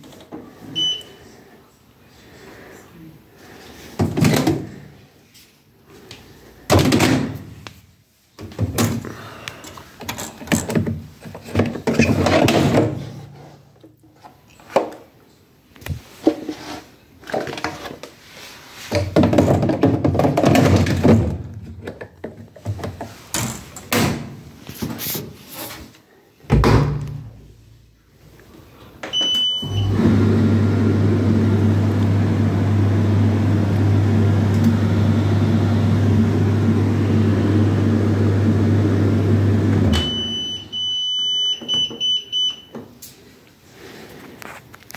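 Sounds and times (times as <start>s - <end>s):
short beeps: 0.8s - 1.2s, 29.1s - 29.9s, 40.0s - 42.7s
dryer drum motor humming: 29.9s - 40.0s.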